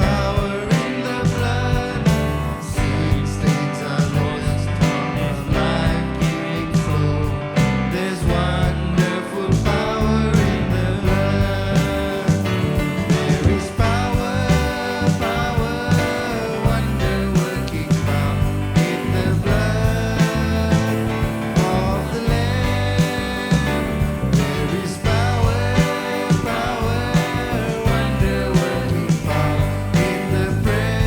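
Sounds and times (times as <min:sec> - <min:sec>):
band playing worship song: 0:00.0 - 0:31.0
person singing: 0:00.0 - 0:31.0.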